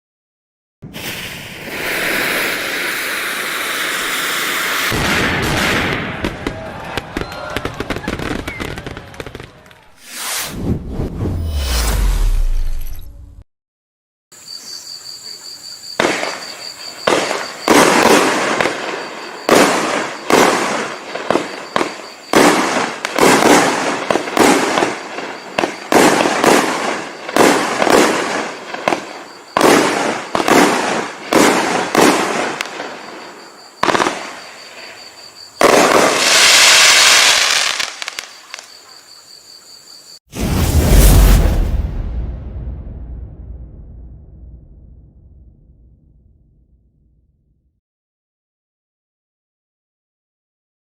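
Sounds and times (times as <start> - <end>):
firework shots and bursts: 0.8 - 12.9, 16.0 - 34.7, 35.6 - 38.6
firework fuse hissing: 0.9 - 5.0, 9.9 - 10.6, 35.9 - 38.7.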